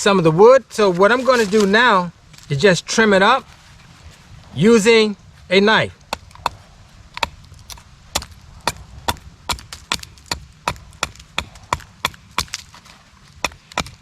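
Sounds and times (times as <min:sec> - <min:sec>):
knife chopping into wood: 0:07.2 - 0:12.8, 0:13.4 - 0:14.0.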